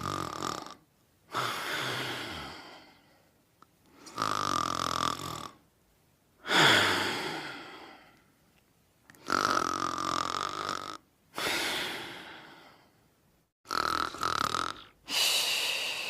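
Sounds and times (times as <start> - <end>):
person snoring: 0.0 - 3.2, 4.0 - 5.6, 6.4 - 8.2, 9.1 - 13.0, 13.6 - 16.0.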